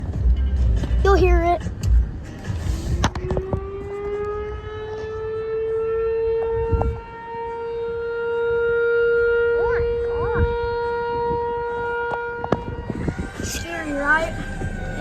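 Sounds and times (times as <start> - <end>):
warning siren wailing: 2.9 - 15.0.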